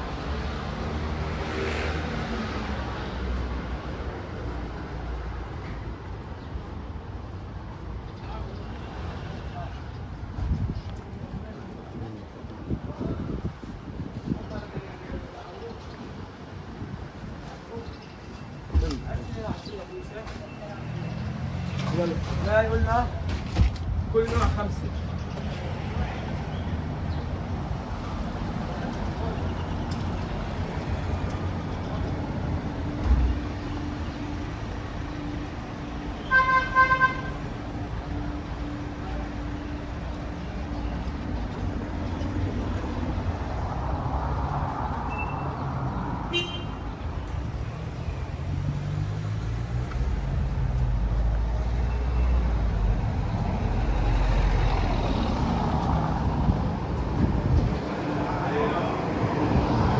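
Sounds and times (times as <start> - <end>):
street traffic: 0.0 - 59.9
vehicle engine rumble: 20.7 - 59.9
vehicle horn tooting: 36.2 - 37.5, 46.3 - 46.8.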